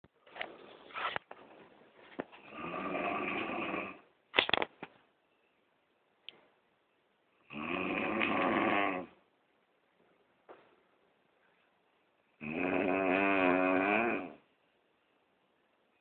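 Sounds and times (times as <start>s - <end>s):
heavy rattling snoring: 2.4s - 4.0s, 7.5s - 9.2s, 12.4s - 14.4s.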